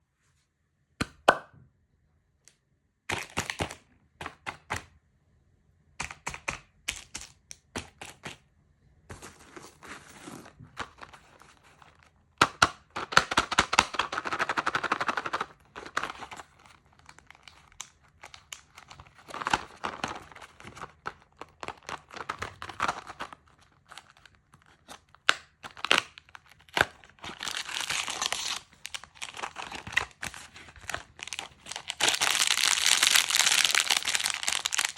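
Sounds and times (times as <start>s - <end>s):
packaging clicks and cracks: 6.0s - 8.4s, 9.1s - 34.9s
plastic wrappers crinkling and tearing: 12.9s - 34.9s.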